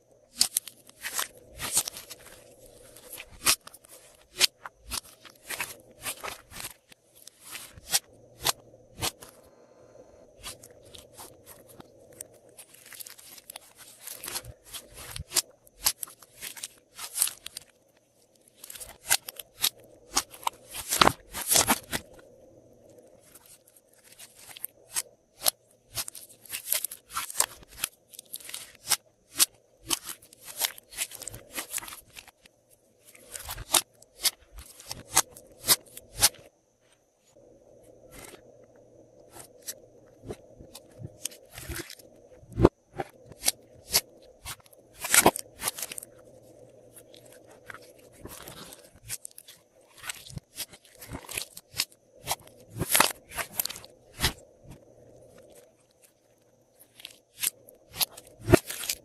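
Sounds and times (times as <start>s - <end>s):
hands squishing slime: 0.3s - 9.3s, 10.4s - 17.7s, 18.6s - 22.0s.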